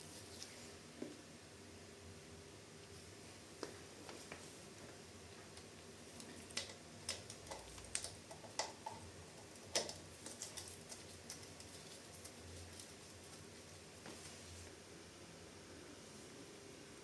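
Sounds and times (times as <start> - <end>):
small tools clicking and clinking: 5.6 - 13.0.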